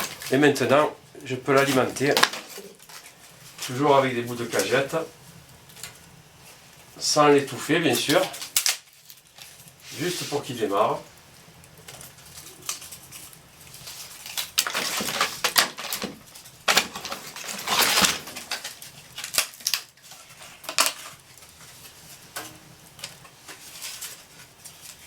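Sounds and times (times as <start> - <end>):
wooden sticks clattering: 0.0 - 4.8, 11.7 - 25.0
scraping rustle: 0.0 - 11.1, 11.8 - 25.0.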